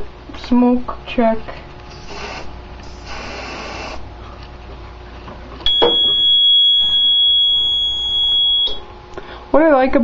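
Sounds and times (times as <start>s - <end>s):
aerosol spray hiss: 1.9s - 4.0s
high-pitched fire alarm tone: 5.6s - 8.9s.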